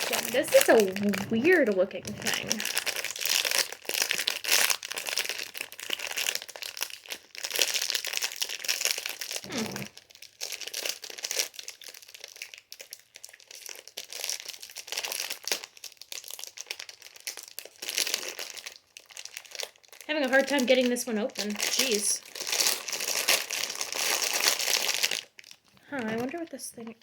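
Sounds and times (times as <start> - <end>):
plastic packaging crinkling: 0.0 - 27.0.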